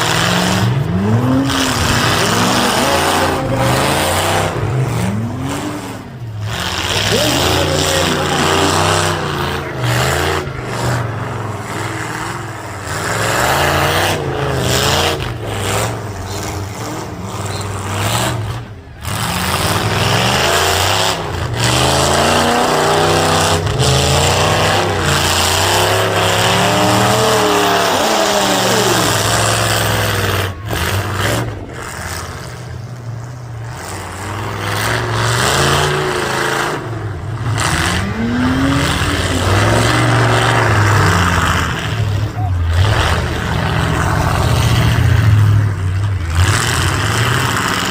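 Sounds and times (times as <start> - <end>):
car engines revving hard: 0.0 - 47.9.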